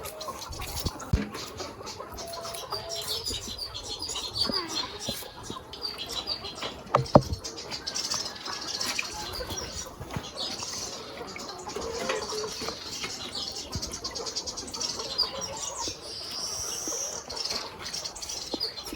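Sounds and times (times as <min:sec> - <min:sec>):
birds chirping: 0:00.0 - 0:18.9
sharp knock: 0:06.9 - 0:07.4.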